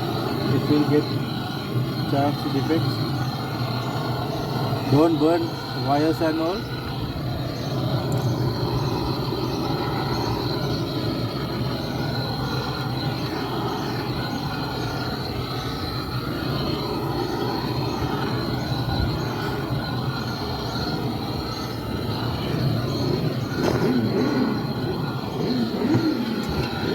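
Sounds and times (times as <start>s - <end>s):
blow lamp flame roaring: 0.0s - 26.9s.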